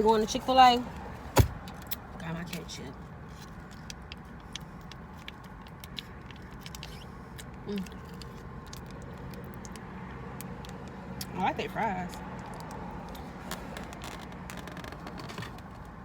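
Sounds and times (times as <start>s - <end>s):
food packaging rustling and clicking: 12.2s - 16.0s.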